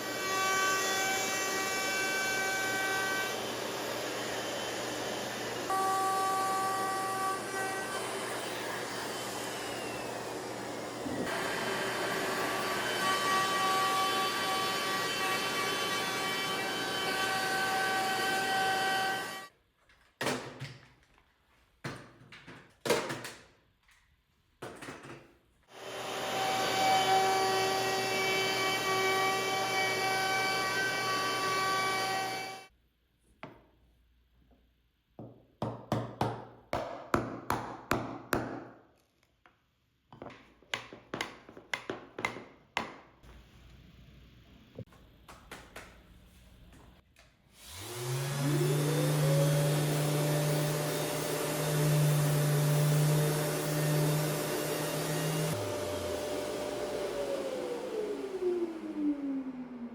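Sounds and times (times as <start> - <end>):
power tool running: 0.0 - 19.5, 25.7 - 32.7, 47.6 - 59.9.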